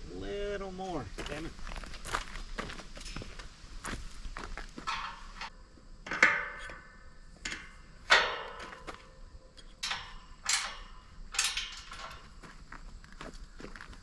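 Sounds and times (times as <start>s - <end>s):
metal gate knocks with ring: 4.8s - 5.5s, 6.1s - 12.4s.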